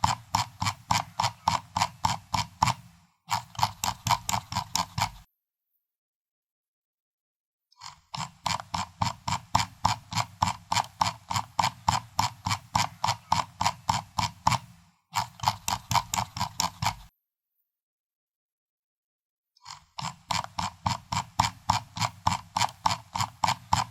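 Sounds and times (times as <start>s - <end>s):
mouse scroll wheel clicks: 0.0s - 5.3s, 7.8s - 17.1s, 19.6s - 23.9s.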